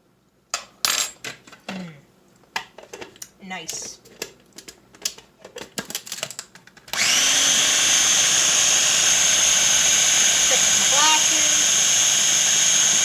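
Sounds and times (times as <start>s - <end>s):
food processor motor whining: 6.9s - 13.0s.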